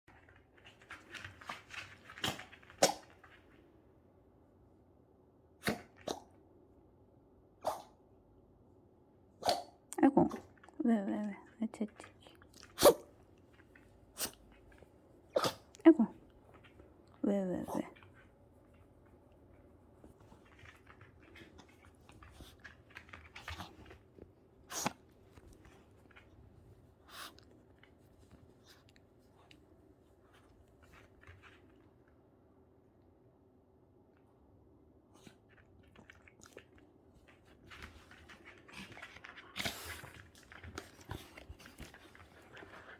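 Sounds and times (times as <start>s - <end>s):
puppy sneezing: 5.6s - 6.3s, 7.6s - 8.0s, 9.4s - 10.5s, 12.7s - 13.1s, 14.2s - 14.4s, 15.3s - 15.7s, 24.7s - 25.0s
puppy short noisy breaths: 27.0s - 27.5s.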